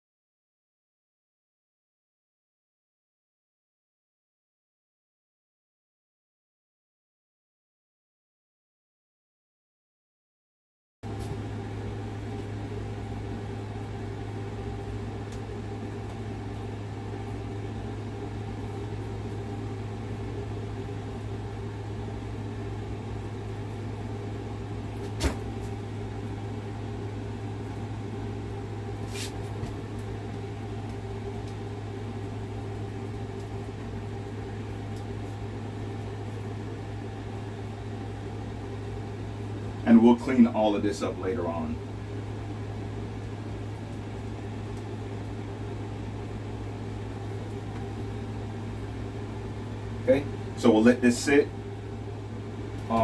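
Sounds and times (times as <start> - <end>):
low machine hum: 11.0 - 53.0.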